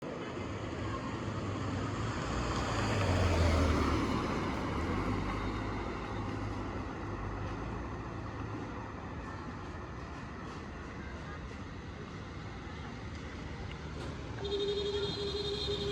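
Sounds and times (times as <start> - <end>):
vehicle engine passing by: 1.3 - 7.6.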